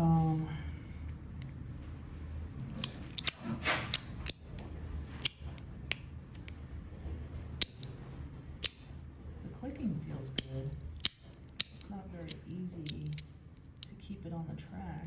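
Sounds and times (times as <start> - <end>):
metal fidget slider clicks: 2.8 - 4.6, 5.2 - 6.5, 10.4 - 13.9.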